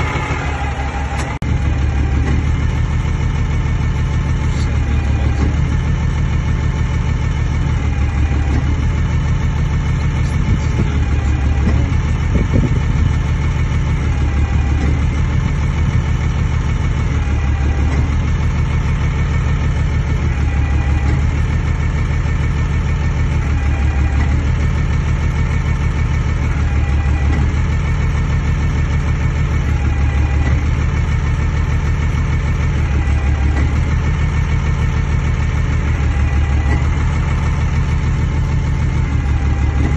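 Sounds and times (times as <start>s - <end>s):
forklift diesel engine idling: 0.0s - 39.9s.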